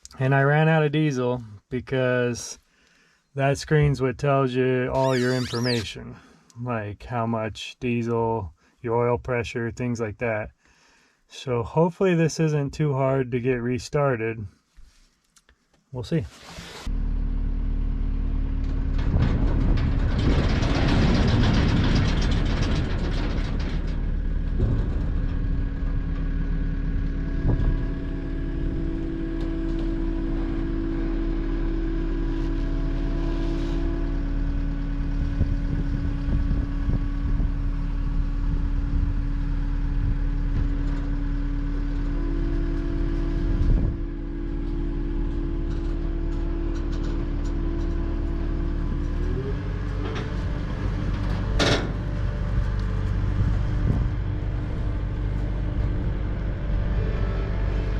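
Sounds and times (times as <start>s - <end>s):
diesel engine running: 16.9s - 57.9s.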